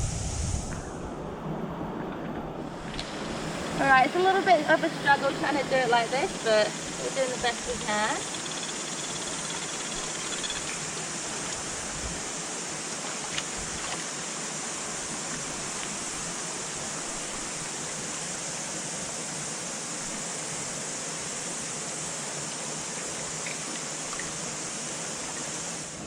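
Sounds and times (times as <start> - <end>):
waterfall and stream rushing: 2.5 - 26.0.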